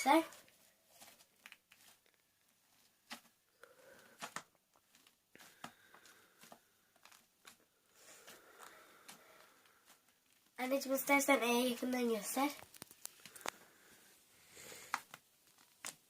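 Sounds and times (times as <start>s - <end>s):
sticky slime clicks and crackles: 12.6s - 13.6s.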